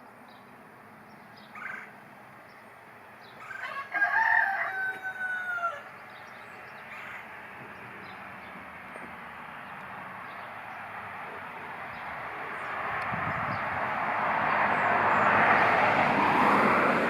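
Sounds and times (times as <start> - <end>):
rooster crowing: 3.4 - 6.0.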